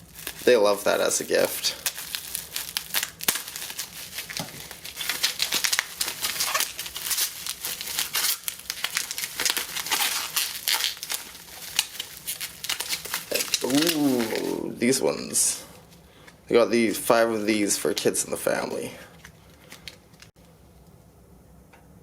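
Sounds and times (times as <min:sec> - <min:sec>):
packaging crinkling and tearing: 0:00.0 - 0:15.0, 0:19.1 - 0:20.3.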